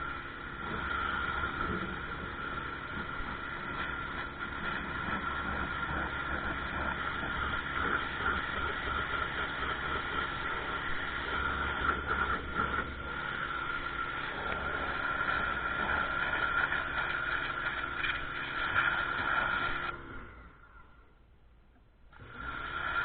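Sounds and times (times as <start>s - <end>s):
water spray hiss: 0.0s - 19.9s, 22.2s - 23.0s
electric motor and pump hum: 0.0s - 23.0s.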